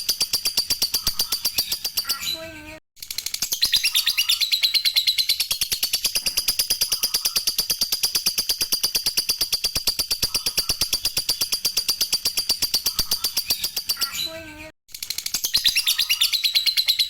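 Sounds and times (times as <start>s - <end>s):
lovebird chattering: 0.0s - 2.2s, 3.6s - 14.2s.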